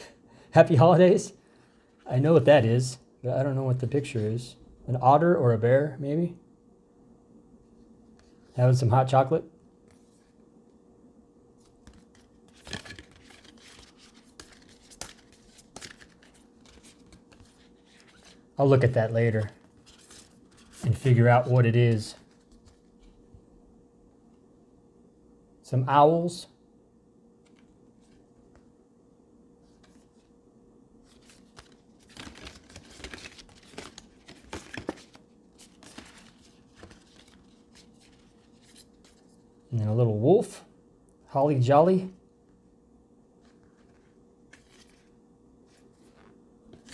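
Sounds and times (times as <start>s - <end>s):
paper cards rustling: 11.6s - 23.3s, 27.4s - 28.7s, 29.7s - 30.3s, 31.0s - 39.6s, 43.4s - 46.9s.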